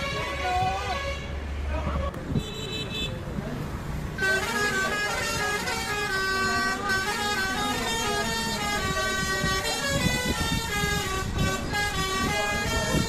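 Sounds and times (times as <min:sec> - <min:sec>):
musical bus horn melody: 0:00.0 - 0:01.5, 0:04.2 - 0:13.0.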